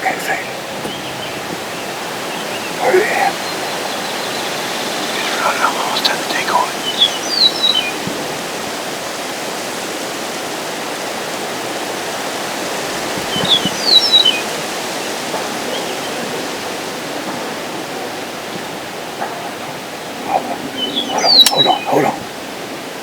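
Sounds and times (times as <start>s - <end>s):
small bird chirping: 0.0s - 8.0s, 20.3s - 22.2s.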